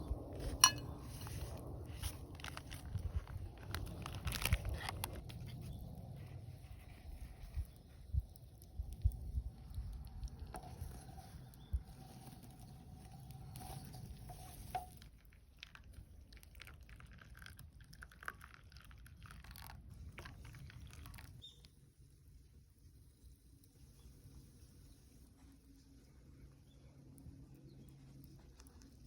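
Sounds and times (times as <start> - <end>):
wood fire crackling: 0.0 - 16.6.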